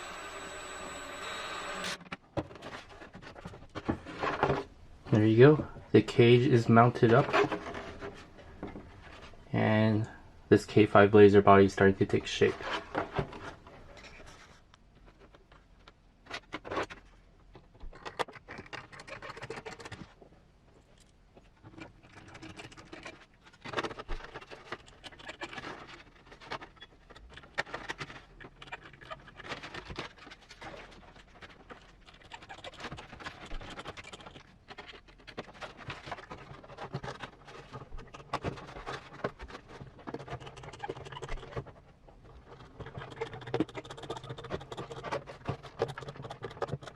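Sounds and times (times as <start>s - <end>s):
clicks and scrapes on plastic parts: 12.4s - 20.3s, 21.0s - 46.9s.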